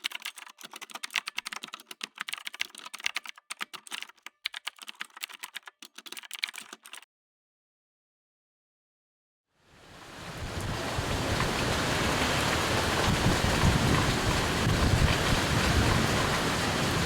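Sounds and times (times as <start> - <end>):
rapid keyboard typing: 0.0 - 7.0.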